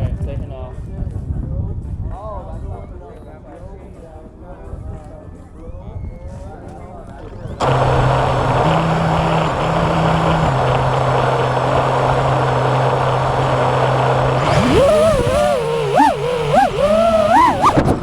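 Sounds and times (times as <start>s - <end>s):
quadcopter motor whine: 7.2s - 18.0s.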